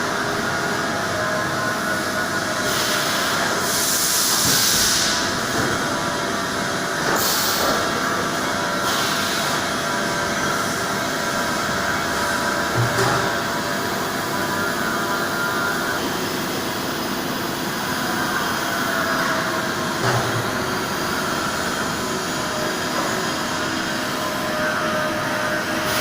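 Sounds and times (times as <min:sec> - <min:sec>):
milling machine hum and whine: 0:00.0 - 0:26.0.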